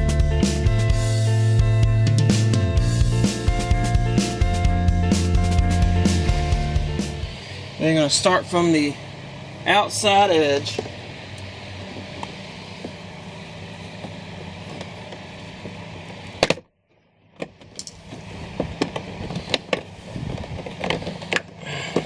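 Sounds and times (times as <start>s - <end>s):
steady low hum: 0.0s - 16.4s.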